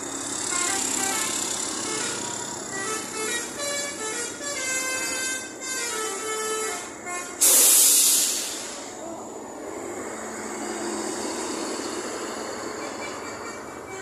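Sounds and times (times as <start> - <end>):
bus engine and road noise: 0.0 - 14.0
bus air brake hiss: 7.2 - 9.1.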